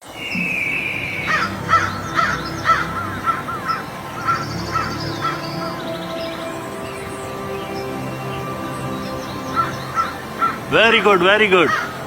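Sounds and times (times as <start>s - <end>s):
faint background music: 0.0s - 12.0s
crow cawing: 1.2s - 5.7s, 9.5s - 12.0s.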